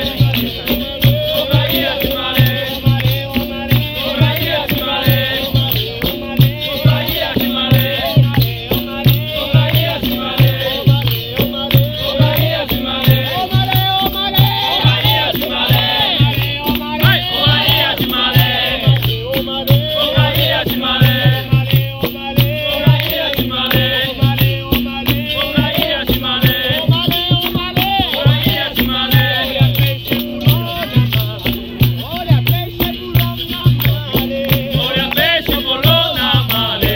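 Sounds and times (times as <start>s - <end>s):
steady drum beat: 0.0s - 36.9s
voices singing: 0.0s - 36.9s.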